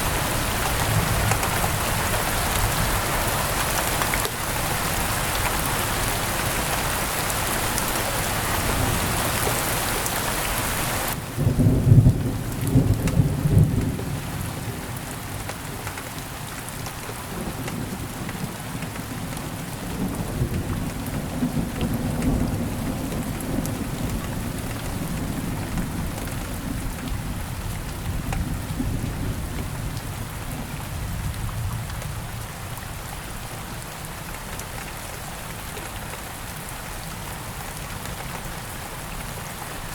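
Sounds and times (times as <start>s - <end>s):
heavy rain hissing: 0.0s - 15.0s.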